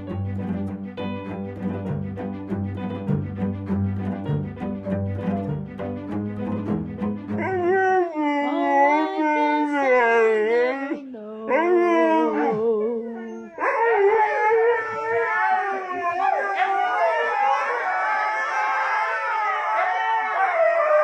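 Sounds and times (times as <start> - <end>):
music: 0.0 - 8.1
dog howling: 7.4 - 21.0.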